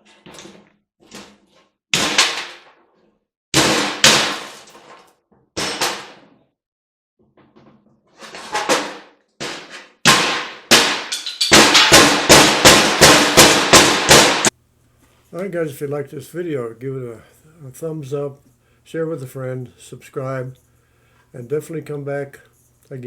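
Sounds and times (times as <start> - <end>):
metal parts clanging: 11.1 - 11.9.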